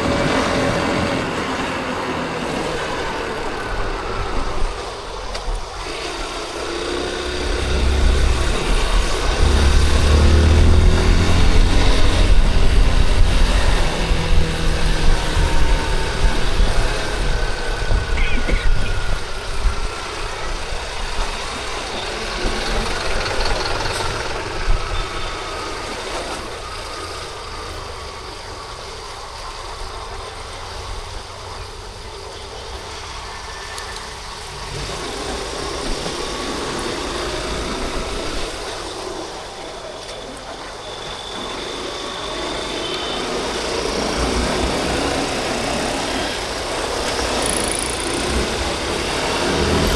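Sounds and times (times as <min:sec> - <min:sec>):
motorcycle engine rumble: 0:00.0 - 0:26.2
city traffic: 0:00.0 - 0:49.9.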